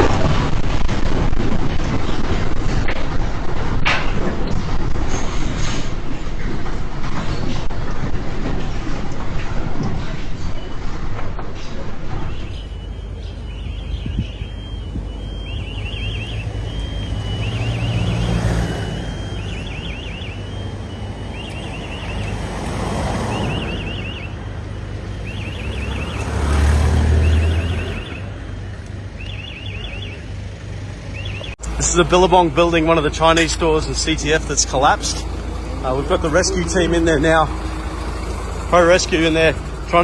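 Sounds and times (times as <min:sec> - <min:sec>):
traffic rumble: 0:00.0 - 0:40.0
vehicles passing by: 0:00.0 - 0:40.0
high warbling chirp: 0:12.2 - 0:30.4, 0:31.1 - 0:39.6.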